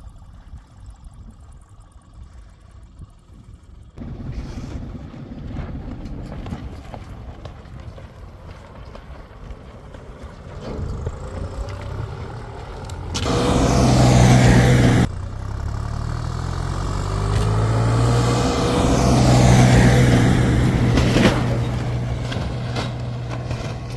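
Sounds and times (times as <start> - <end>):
tractor engine revving: 4.0 - 7.1, 9.9 - 23.9.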